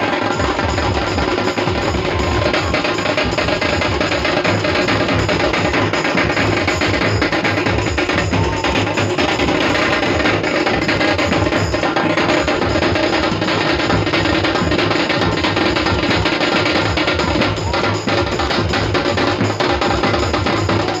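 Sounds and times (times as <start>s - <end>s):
loud music with driving drum beat: 0.0s - 21.0s.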